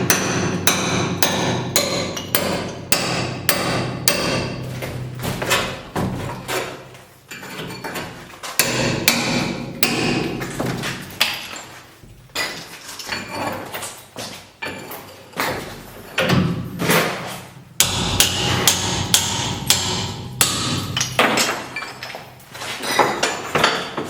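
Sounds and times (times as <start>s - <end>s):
hammer striking brick: 0.0s - 4.6s, 8.6s - 10.6s, 17.8s - 21.6s.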